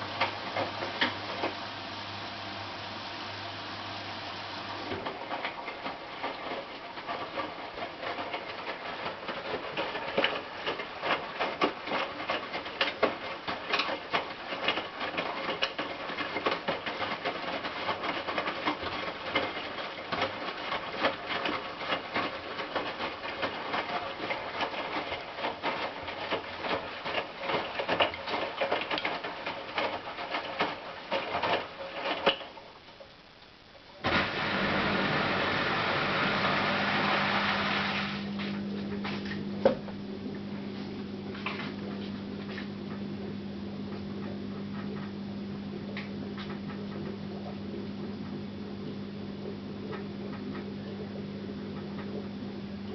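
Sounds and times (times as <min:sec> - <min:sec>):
washing machine drum tumbling: 0:34.0 - 0:52.9.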